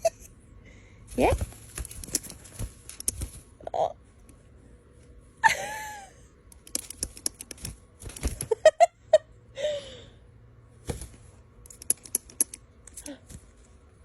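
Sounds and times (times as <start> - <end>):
sharp clicks and scratches: 1.2 - 3.5, 6.5 - 8.6, 11.6 - 13.2.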